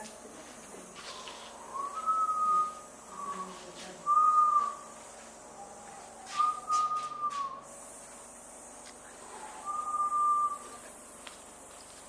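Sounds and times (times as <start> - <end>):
person whistling long notes: 1.7 - 4.8, 6.3 - 7.6, 9.6 - 10.8.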